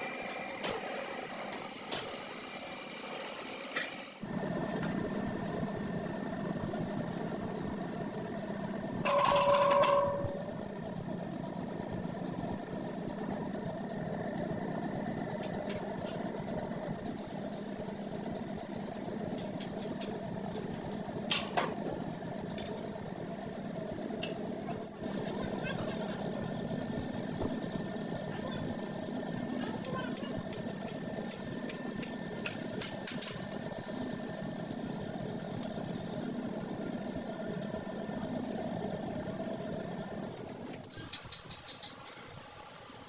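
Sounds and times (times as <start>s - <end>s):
machine whine: 0.0s - 21.0s
machine running steadily: 0.0s - 43.0s.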